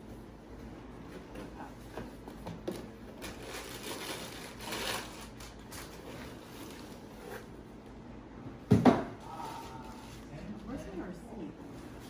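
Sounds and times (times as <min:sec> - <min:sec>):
paper packaging rustling: 0:02.7 - 0:07.4.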